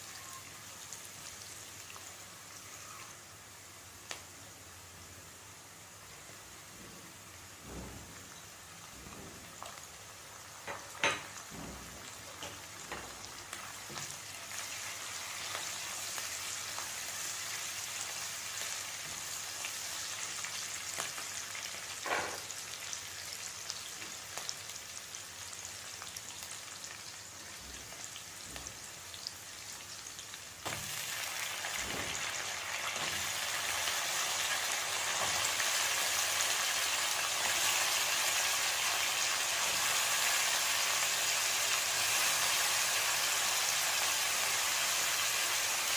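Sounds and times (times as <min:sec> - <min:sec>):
food sizzling in hot oil: 0:00.0 - 0:45.9
knock: 0:10.7 - 0:12.0.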